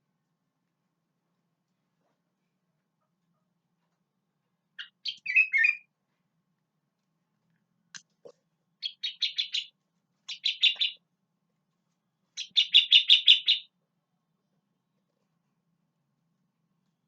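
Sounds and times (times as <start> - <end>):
bulbul singing: 4.8 - 5.8, 8.8 - 9.7, 10.3 - 11.0, 12.4 - 13.7.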